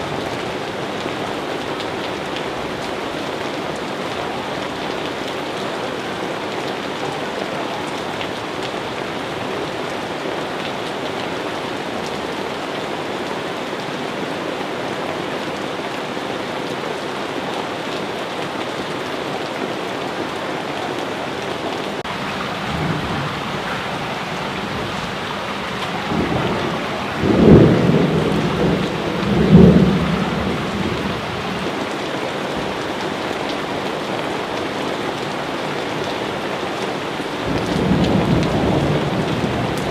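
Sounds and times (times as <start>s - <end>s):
heavy rain falling: 0.0s - 39.9s
thunder rumbling: 22.0s - 31.8s, 37.4s - 39.9s.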